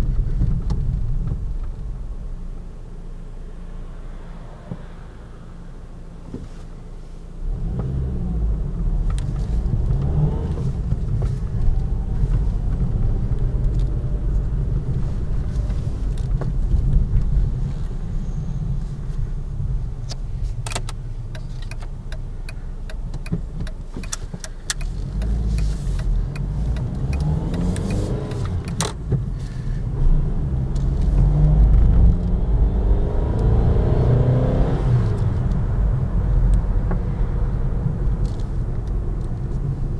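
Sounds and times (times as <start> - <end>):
car engine accelerating: 7.4 - 20.0, 20.7 - 39.9
sharp clicks: 20.1 - 29.0.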